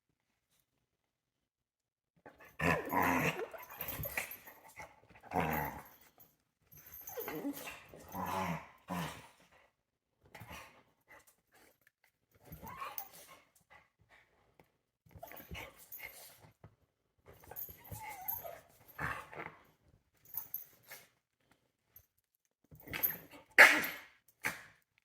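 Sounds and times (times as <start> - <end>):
small dogs growling and barking: 2.3 - 6.1, 6.9 - 9.5, 17.5 - 19.6.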